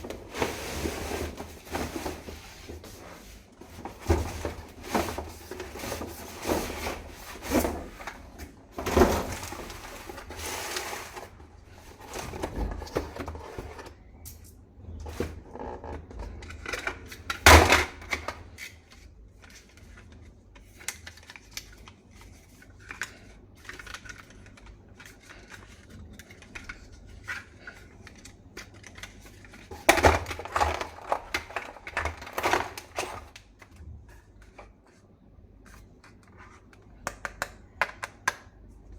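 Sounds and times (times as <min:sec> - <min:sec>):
packaging rustling: 0:19.4 - 0:33.8
plastic clicks and taps: 0:37.0 - 0:38.5.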